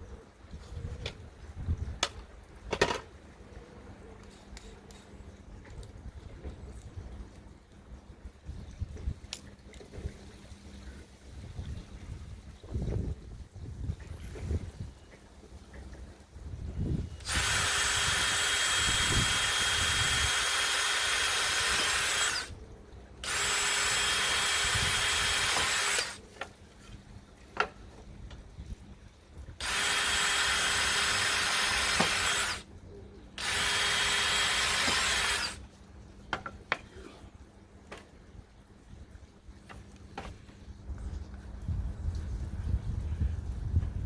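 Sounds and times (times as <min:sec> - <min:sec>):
handheld power tool cutting wood: 0:17.2 - 0:22.6, 0:23.2 - 0:26.2, 0:29.6 - 0:32.7, 0:33.4 - 0:35.6.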